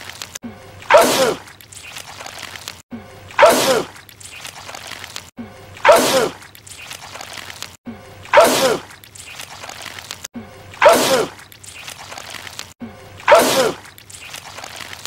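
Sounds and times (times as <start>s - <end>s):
man sneezing: 13.3s - 13.8s.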